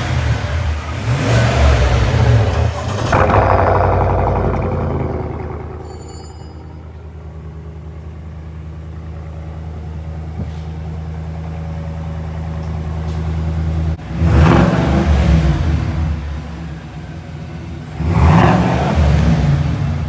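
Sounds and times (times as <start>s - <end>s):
engine revving sharply: 0.0s - 7.9s, 14.0s - 16.6s, 17.9s - 20.0s
car engine idling: 0.0s - 20.0s.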